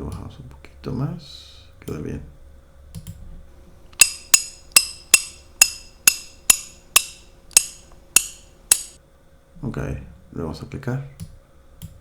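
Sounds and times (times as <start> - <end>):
rattle clicks with bright ring: 4.0 - 9.0.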